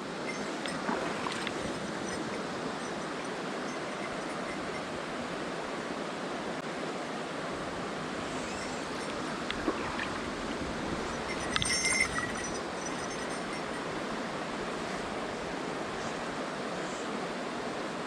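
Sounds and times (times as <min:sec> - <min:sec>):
stream flowing: 0:00.0 - 0:18.0.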